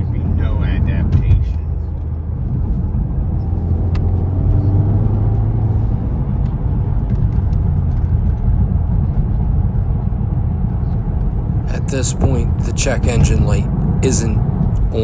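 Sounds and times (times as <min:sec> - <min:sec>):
road noise: 0:01.9 - 0:06.8, 0:10.9 - 0:15.0.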